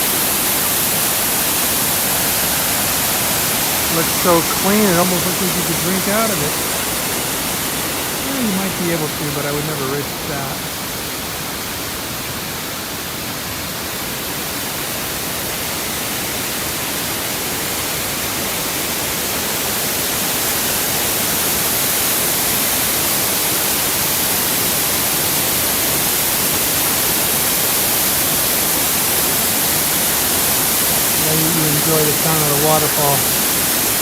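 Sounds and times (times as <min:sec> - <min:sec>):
waterfall rushing: 0:00.0 - 0:13.2, 0:27.9 - 0:34.0.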